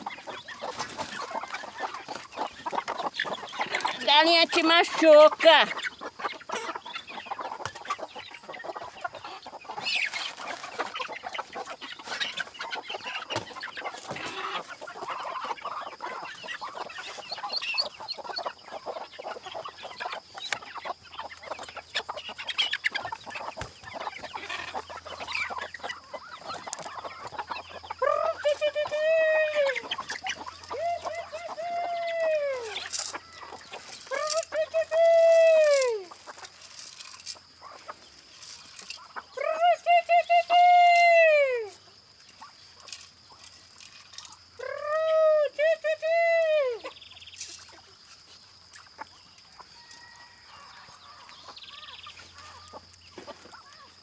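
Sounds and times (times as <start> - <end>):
chickens clucking: 0.0 - 54.0
rooster crowing: 49.6 - 51.4.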